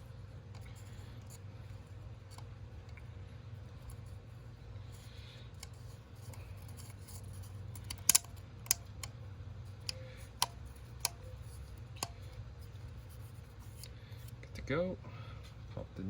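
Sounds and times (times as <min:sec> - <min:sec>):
steady low hum: 0:00.0 - 0:16.0
oil filter parts clicking: 0:04.9 - 0:12.8.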